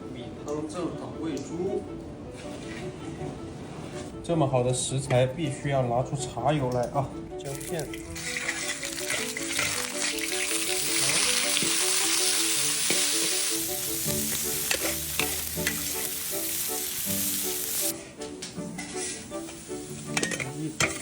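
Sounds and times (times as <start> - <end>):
food sizzling in oil: 7.5 - 18.0
spatula scraping a wok: 11.4 - 17.9.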